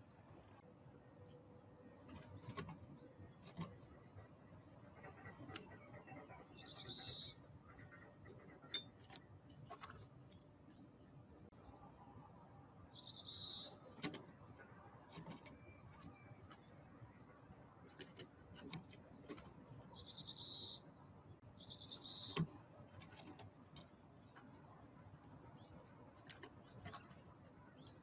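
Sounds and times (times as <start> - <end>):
songbirds buzzy high calls: 4.9 - 9.2, 13.0 - 14.0, 19.7 - 22.6.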